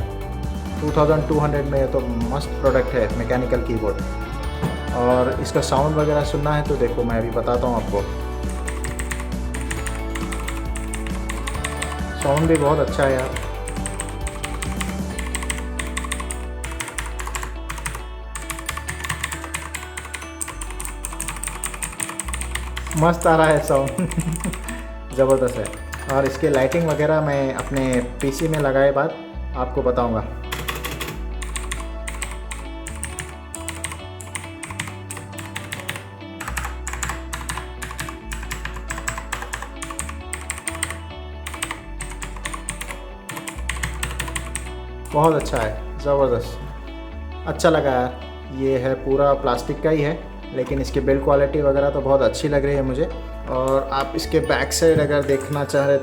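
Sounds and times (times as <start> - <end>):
background music: 0.0 - 56.0
mechanical keyboard typing: 8.4 - 28.8, 30.5 - 45.7, 54.8 - 55.8.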